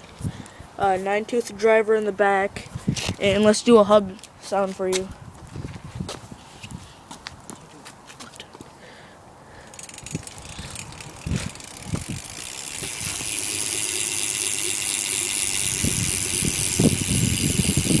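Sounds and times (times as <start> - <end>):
bicycle freewheel clicking rattle: 9.6 - 18.0.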